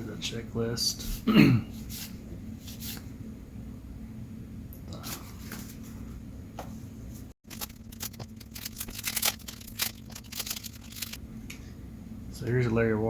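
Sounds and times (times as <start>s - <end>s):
cards rustling and sliding: 1.9s - 3.0s, 7.5s - 11.2s.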